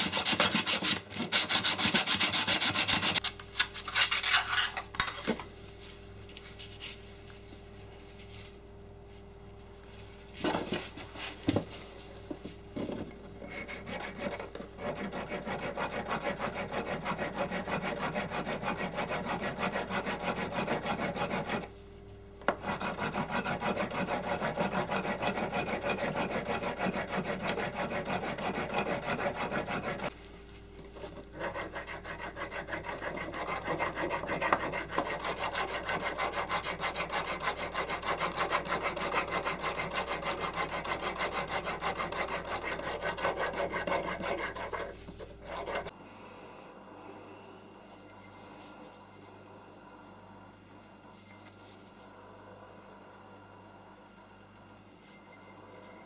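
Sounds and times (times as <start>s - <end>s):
metal being hand-filed: 0.0s - 5.2s, 13.1s - 21.7s, 22.5s - 30.2s, 31.1s - 46.0s.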